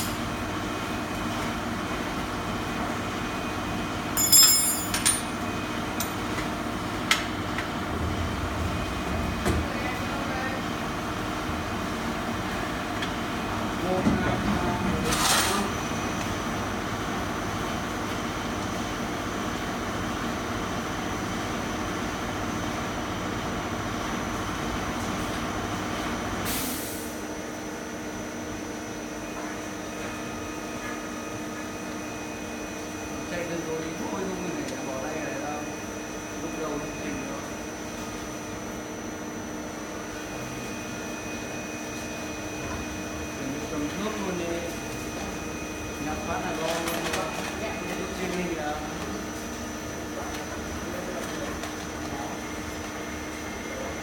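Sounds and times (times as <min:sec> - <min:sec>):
machine hum: 0:00.0 - 0:25.2, 0:31.7 - 0:54.0
sharp metallic clinks: 0:04.2 - 0:05.3.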